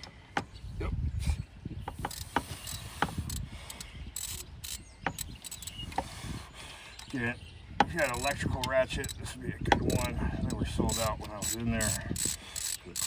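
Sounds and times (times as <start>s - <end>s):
socket wrench ratcheting: 1.9s - 6.0s, 8.0s - 9.2s, 9.8s - 13.0s.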